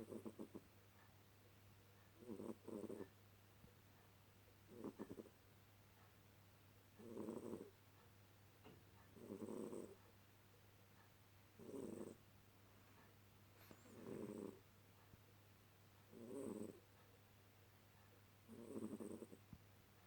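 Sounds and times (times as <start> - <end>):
cat snoring softly: 0.0 - 1.1, 2.2 - 3.2, 4.7 - 5.4, 7.0 - 7.8, 8.6 - 10.1, 11.6 - 12.3, 13.0 - 14.7, 16.1 - 17.0, 18.5 - 19.6.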